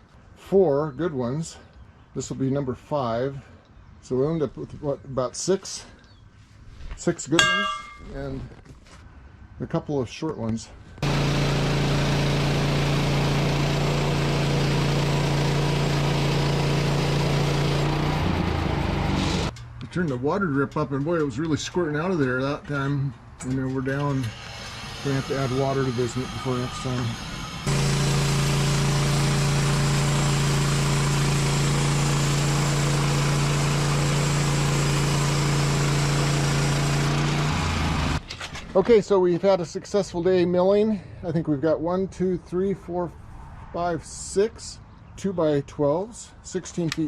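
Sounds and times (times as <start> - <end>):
bandsaw mill engine cutting log: 11.0 - 19.6, 23.7 - 38.3.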